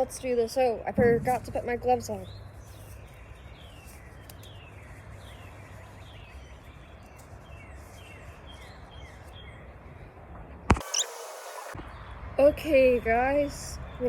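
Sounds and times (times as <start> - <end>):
bird chirping: 1.3 - 9.8, 10.7 - 12.2.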